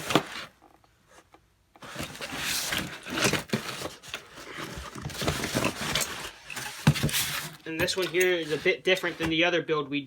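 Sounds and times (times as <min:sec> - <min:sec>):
cardboard box rustling and scraping: 0:01.8 - 0:09.4.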